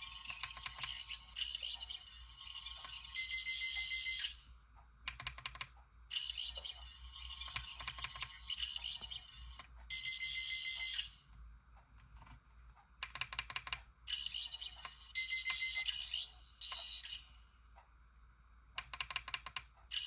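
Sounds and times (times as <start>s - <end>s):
toy electronic scanning sound: 0.0s - 4.6s, 6.1s - 11.3s, 14.1s - 17.4s
sharp clicks: 5.1s - 5.8s, 7.4s - 8.4s, 13.0s - 13.9s, 18.8s - 19.8s.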